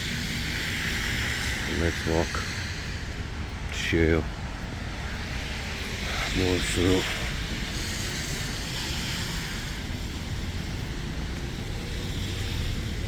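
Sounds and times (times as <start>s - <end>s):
road traffic rumble: 0.0s - 13.0s
tyre hiss: 5.2s - 13.0s.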